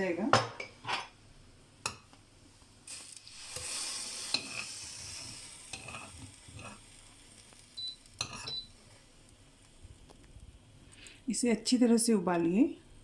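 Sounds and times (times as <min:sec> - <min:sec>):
boiling hiss: 0:01.1 - 0:11.8
spoon clinking against pan: 0:08.2 - 0:08.6.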